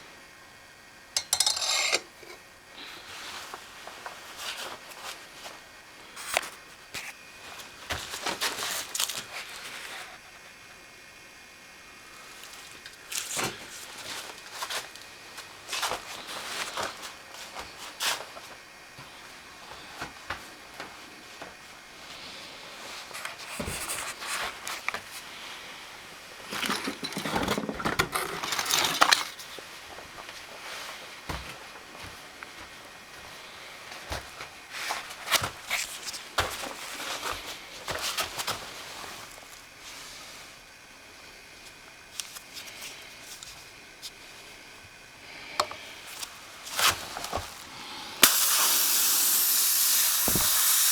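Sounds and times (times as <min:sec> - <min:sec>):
metal tools clinking and knocking: 0:01.2 - 0:02.4, 0:26.5 - 0:29.4
tools scraping and clicking: 0:01.2 - 0:02.4.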